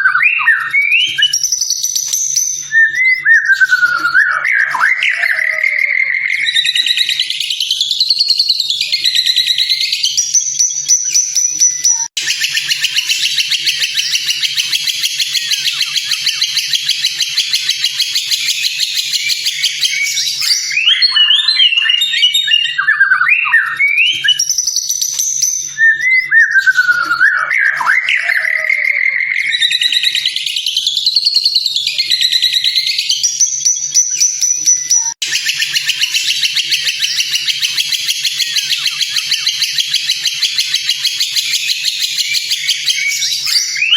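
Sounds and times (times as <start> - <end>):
bird high rapid trill: 0.0 - 22.7, 34.0 - 43.9
fluty whistled bird phrases: 0.0 - 43.9.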